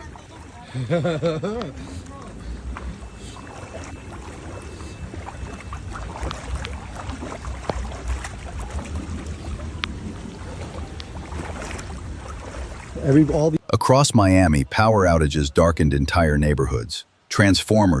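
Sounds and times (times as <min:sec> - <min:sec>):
floodwater sloshing: 0:00.0 - 0:13.7
steady low rumble: 0:00.0 - 0:16.9
small splashes: 0:01.5 - 0:13.6.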